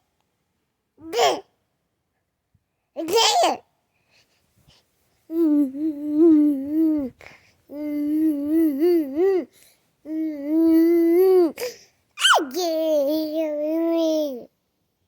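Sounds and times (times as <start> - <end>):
baby babbling: 1.0 - 1.5, 3.0 - 3.6, 5.3 - 9.5, 10.1 - 14.5
baby squealing: 12.2 - 12.7.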